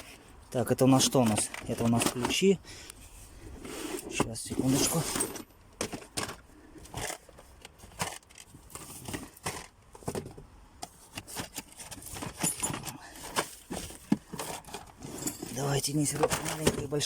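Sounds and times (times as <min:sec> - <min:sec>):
metal wrenches clinking: 0:04.5 - 0:07.3, 0:11.3 - 0:17.0.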